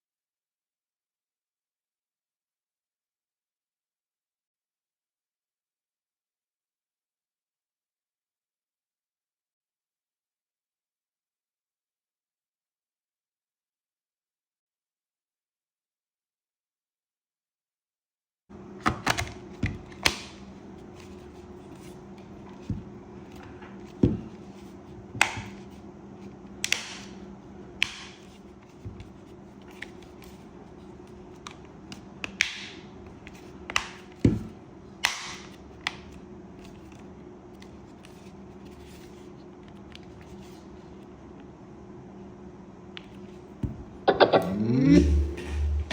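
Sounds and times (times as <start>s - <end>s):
steady low hum: 18.5s - 45.9s.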